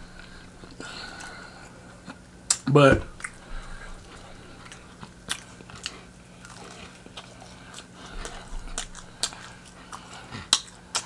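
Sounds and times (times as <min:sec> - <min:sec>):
crunchy chewing: 0:00.0 - 0:11.0
faint steady hum: 0:00.0 - 0:11.0.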